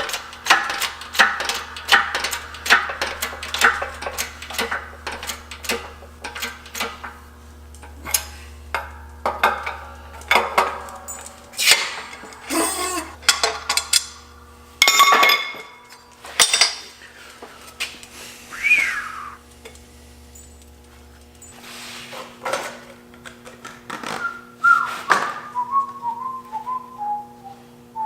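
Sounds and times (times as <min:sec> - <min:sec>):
low hum: 0:03.2 - 0:14.8.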